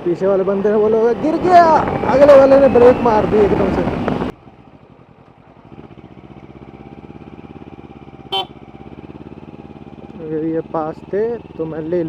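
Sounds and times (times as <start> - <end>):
motorcycle engine throbbing: 0.2 - 12.0
short horn beep: 8.3 - 8.6.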